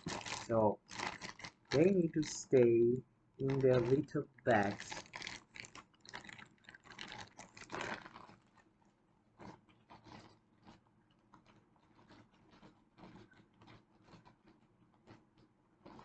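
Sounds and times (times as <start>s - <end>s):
plastic bags crinkling: 0.0s - 2.8s, 3.4s - 8.6s.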